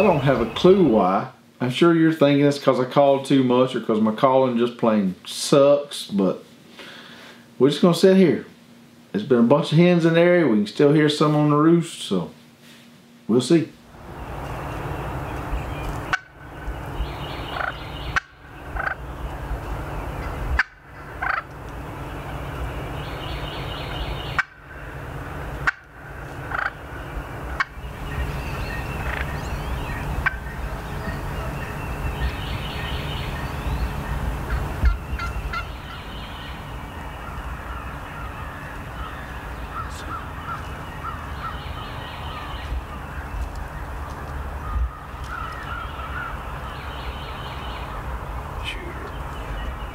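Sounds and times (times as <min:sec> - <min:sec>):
turkey gobbling: 0:15.9 - 0:19.2, 0:20.2 - 0:33.0, 0:34.4 - 0:36.2.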